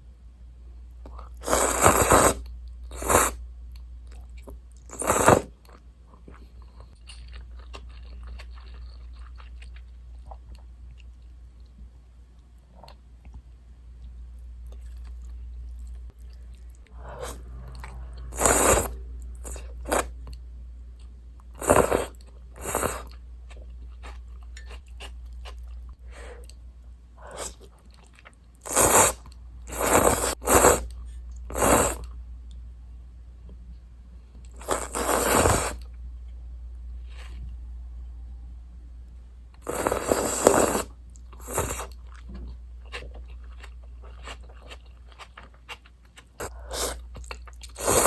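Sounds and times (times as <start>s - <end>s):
low steady hum: 0.0s - 48.0s
loud noodle slurps: 1.4s - 2.4s, 3.0s - 3.4s, 4.9s - 5.5s, 18.3s - 20.1s, 21.6s - 23.1s, 28.6s - 30.9s, 31.5s - 32.0s, 34.6s - 35.8s, 39.6s - 41.9s, 46.4s - 47.0s, 47.7s - 48.0s
chewing: 4.1s - 11.7s, 39.7s - 48.0s.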